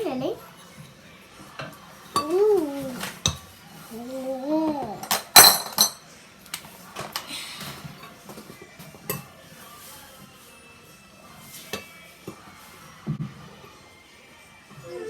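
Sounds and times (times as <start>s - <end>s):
utensils and dishes clinking: 0.0s - 4.0s, 4.6s - 10.0s, 11.4s - 12.6s.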